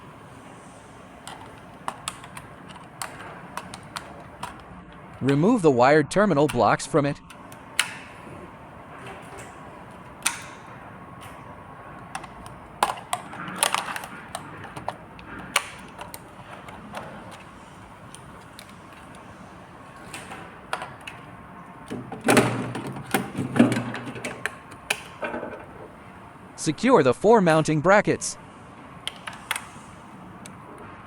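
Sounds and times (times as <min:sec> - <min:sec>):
plastic parts clicking and knocking: 0:01.2 - 0:05.5, 0:07.2 - 0:26.2, 0:29.0 - 0:29.8.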